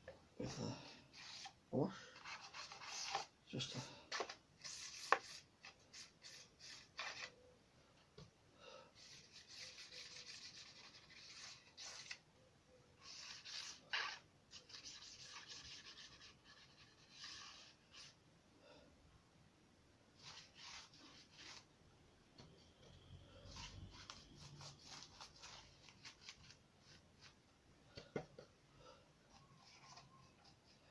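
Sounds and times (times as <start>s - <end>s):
paintbrush brushing strokes: 9.0s - 12.2s, 13.0s - 18.2s, 20.2s - 21.7s.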